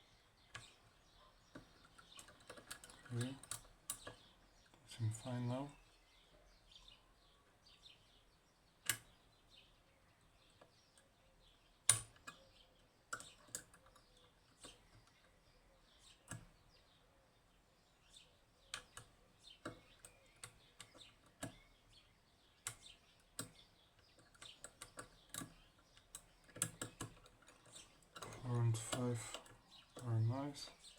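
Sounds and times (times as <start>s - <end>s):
lock picks clicking in lock: 1.5s - 4.3s, 11.8s - 15.2s, 22.6s - 30.1s.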